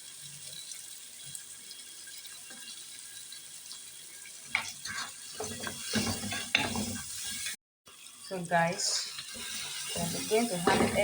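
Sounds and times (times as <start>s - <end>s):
food sizzling in hot oil: 0.0s - 11.0s
spoon stirring and scraping pan: 4.4s - 7.6s, 8.8s - 11.0s.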